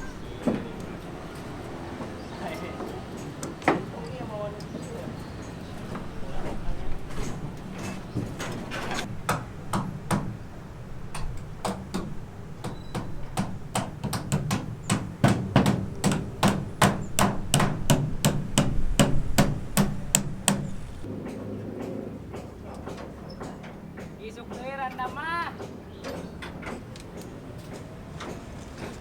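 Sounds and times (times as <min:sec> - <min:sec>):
hammer blows: 0:05.7 - 0:26.4.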